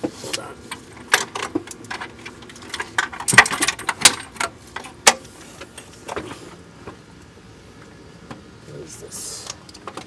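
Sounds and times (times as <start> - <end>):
engine parts rattling: 0.0 - 7.0.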